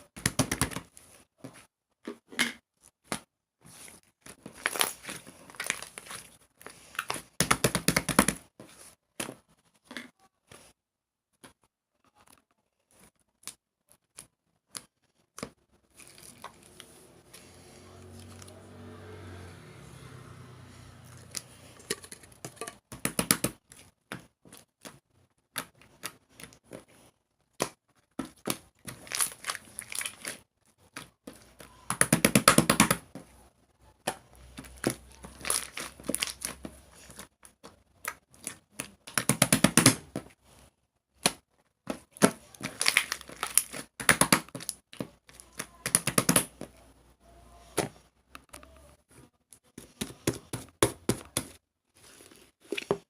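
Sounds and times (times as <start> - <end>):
slime crackling and popping: 27.5 - 31.4, 34.0 - 40.0, 41.2 - 46.5.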